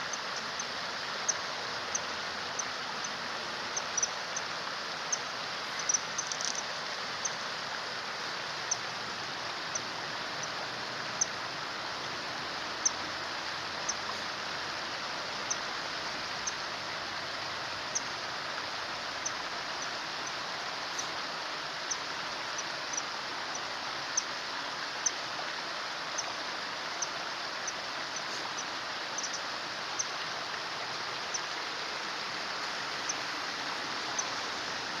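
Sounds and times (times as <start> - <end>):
stream running: 0.0 - 35.0
high bird peeps: 5.8 - 6.6.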